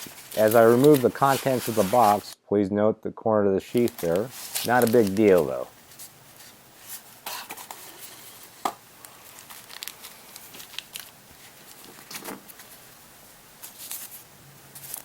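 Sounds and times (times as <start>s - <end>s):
packaging rustling and tapping: 0.0s - 2.2s, 3.8s - 7.9s, 8.6s - 12.8s.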